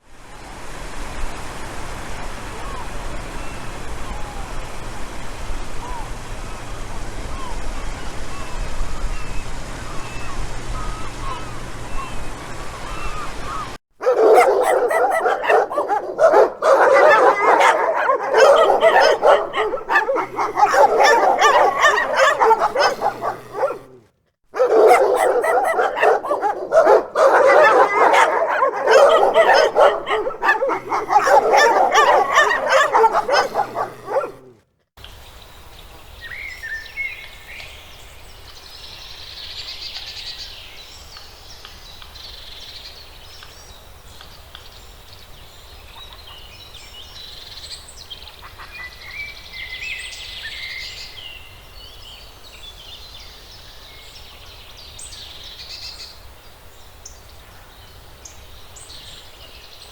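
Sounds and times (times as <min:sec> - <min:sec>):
dog barking rapidly: 0:14.0 - 0:24.0, 0:24.6 - 0:34.6.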